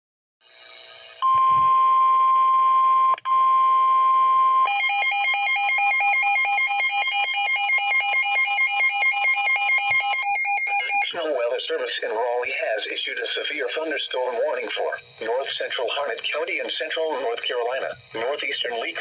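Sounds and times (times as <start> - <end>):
steady electronic alert tone: 4.7 - 11.1.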